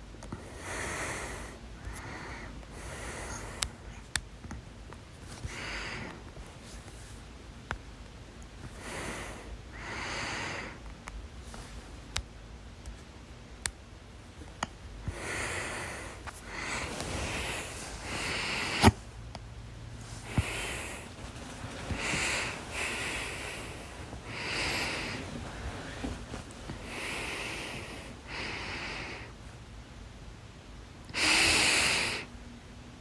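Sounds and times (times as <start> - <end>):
person breathing heavily through nose: 0.4 - 4.0, 5.3 - 7.2, 8.6 - 10.8, 15.1 - 19.1, 19.9 - 29.5, 31.1 - 32.3.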